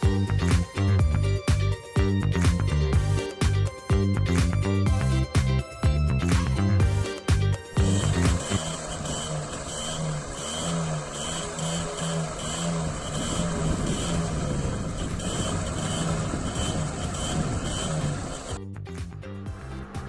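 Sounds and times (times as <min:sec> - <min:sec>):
moped engine running: 0:06.4 - 0:20.0
short tone beeping: 0:07.8 - 0:18.6.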